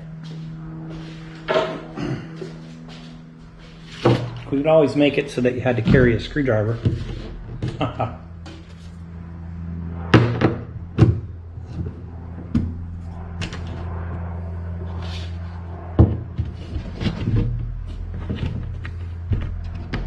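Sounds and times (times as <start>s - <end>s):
steady low hum: 0.0s - 20.0s
wooden parts knocking and clunking: 17.0s - 20.0s.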